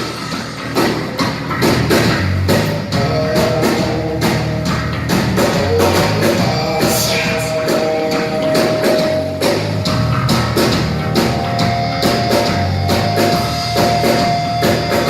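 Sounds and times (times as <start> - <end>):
rock music: 0.0 - 15.0
steady drum beat: 0.0 - 15.0.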